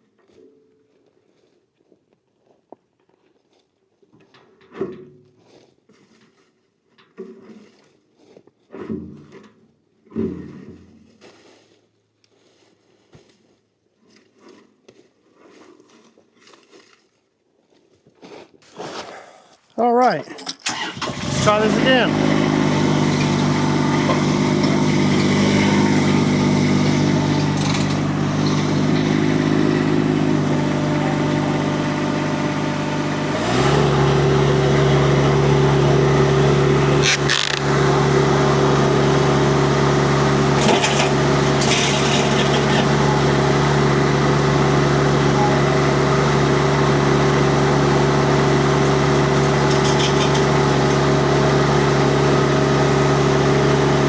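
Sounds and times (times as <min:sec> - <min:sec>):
diesel engine revving: 0:20.6 - 0:54.0.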